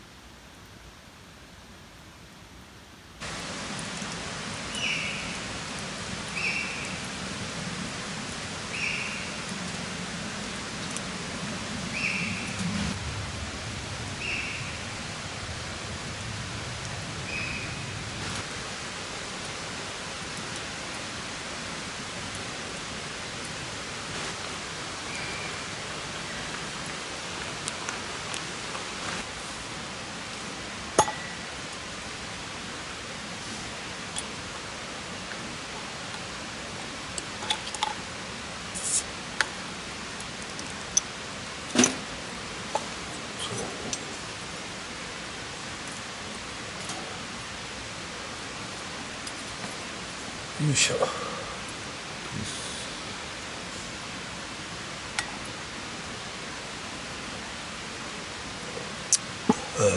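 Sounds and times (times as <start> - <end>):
steady hiss: 0.0 - 59.9
steady rushing noise: 1.5 - 37.2.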